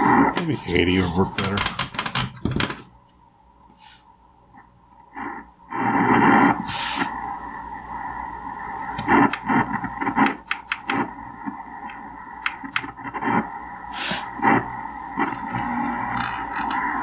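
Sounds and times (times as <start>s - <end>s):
distorted garbled radio signals: 0.0s - 1.9s, 4.6s - 17.0s
sharp static crackles: 0.0s - 2.9s, 4.4s - 17.0s
radio static hiss: 0.0s - 3.0s, 3.6s - 17.0s
steady whistling tones: 14.5s - 17.0s.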